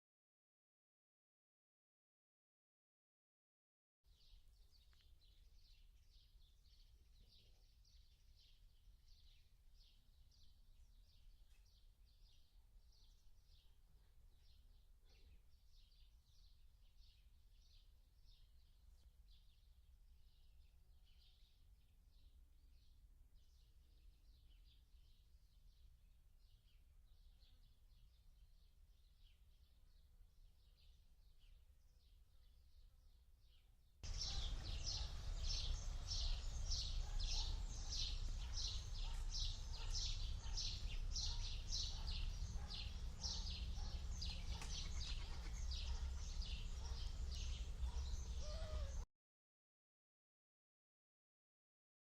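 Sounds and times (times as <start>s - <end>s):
birds chirping: 34.1s - 49.0s.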